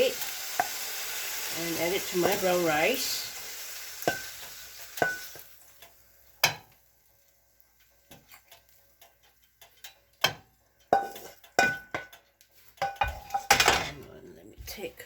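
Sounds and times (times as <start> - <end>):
faint sizzling: 0.0 - 14.0
utensil scraping a frying pan: 7.8 - 14.0.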